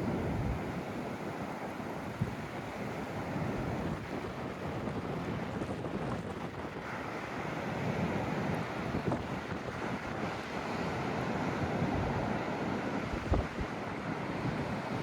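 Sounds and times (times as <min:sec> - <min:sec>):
wind buffeting microphone: 0:00.0 - 0:06.9.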